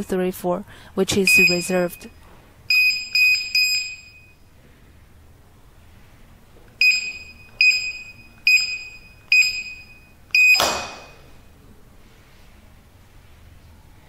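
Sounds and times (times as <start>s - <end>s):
keypad buzzer beeping: 1.3s - 2.0s, 2.7s - 4.3s, 6.8s - 11.2s.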